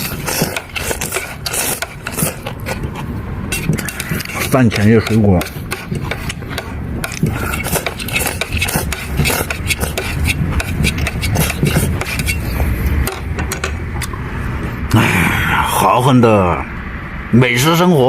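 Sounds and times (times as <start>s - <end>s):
utensil scraping pineapple: 0.0s - 13.7s.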